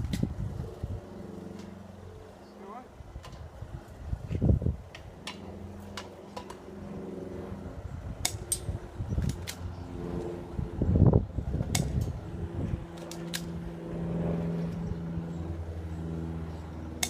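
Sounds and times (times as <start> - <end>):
steady low hum: 0.0 - 17.0
airsoft pistol clicks and snaps: 8.2 - 9.6, 11.7 - 12.2, 13.0 - 13.6.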